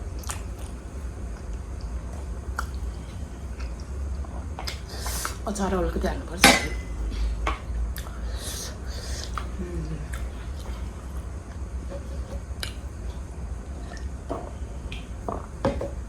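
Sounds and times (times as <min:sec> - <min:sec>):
low steady hum: 0:00.0 - 0:16.0
chewing and mouth sounds: 0:00.1 - 0:05.4, 0:07.2 - 0:14.2
wet smacks and slurps: 0:00.2 - 0:00.8, 0:02.5 - 0:02.9.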